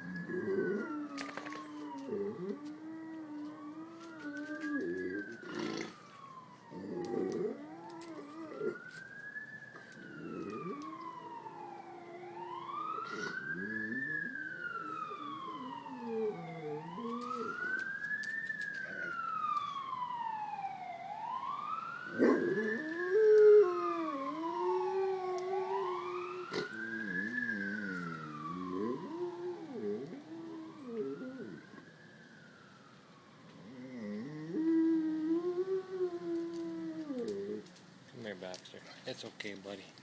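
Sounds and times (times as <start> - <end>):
dog howling: 0.0 - 8.8, 10.1 - 17.8, 22.1 - 31.8, 33.6 - 37.7
emergency vehicle siren wailing: 0.0 - 38.8.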